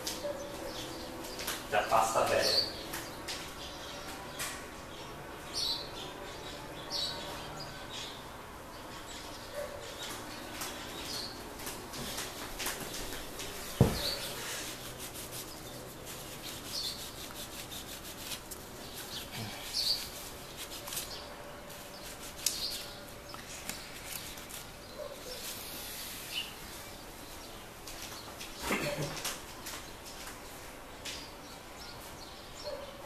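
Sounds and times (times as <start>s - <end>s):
rubbing strokes on heatsink: 11.9s - 27.5s.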